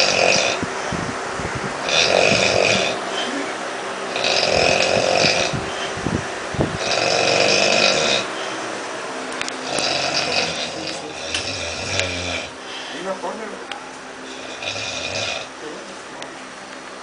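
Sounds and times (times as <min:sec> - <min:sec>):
person snoring loudly: 0:00.0 - 0:00.6, 0:01.8 - 0:03.4, 0:04.1 - 0:05.6, 0:06.8 - 0:08.3, 0:09.6 - 0:12.9, 0:14.2 - 0:15.6.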